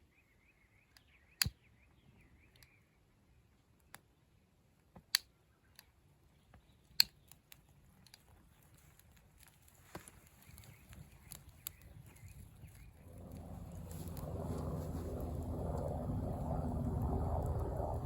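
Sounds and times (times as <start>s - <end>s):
sharp clicks: 6.9s - 8.2s.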